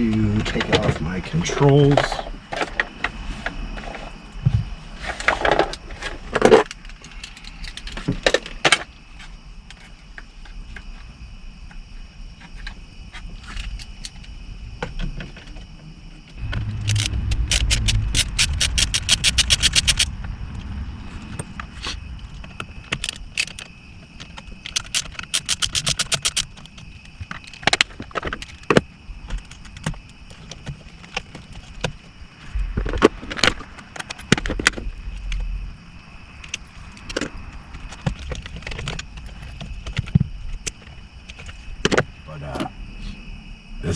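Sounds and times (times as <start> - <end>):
ratchet wrench clicking: 16.8 - 20.1, 23.0 - 23.6, 24.7 - 26.5.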